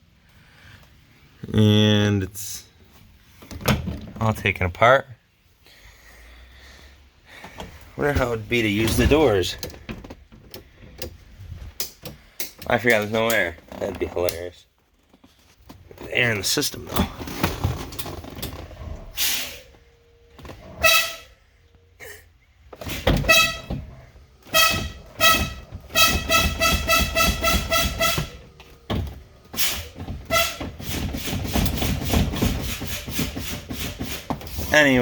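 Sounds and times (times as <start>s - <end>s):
school bus horn tooting: 20.8s - 21.5s, 22.9s - 28.6s, 29.6s - 30.6s.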